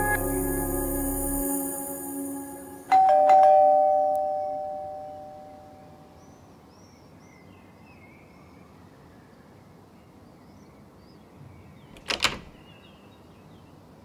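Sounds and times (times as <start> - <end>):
background music: 0.0 - 3.3
two-tone doorbell chime: 2.9 - 5.8.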